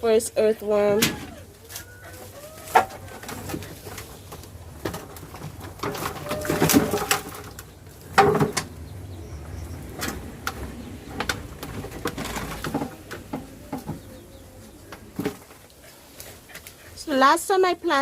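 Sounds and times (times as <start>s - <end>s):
soil falling onto metal sheet: 4.8s - 8.7s.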